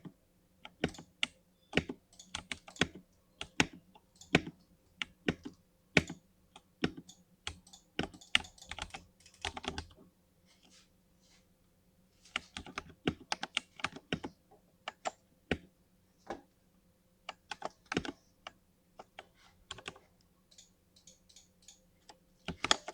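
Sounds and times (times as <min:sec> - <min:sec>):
computer keyboard typing: 0:00.6 - 0:06.2, 0:06.8 - 0:10.0, 0:12.4 - 0:15.7, 0:17.3 - 0:22.9.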